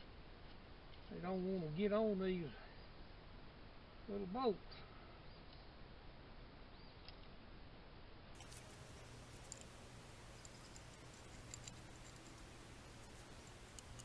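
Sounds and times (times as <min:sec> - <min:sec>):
low steady hum: 0:00.0 - 0:14.0
faint ticks: 0:08.4 - 0:14.0.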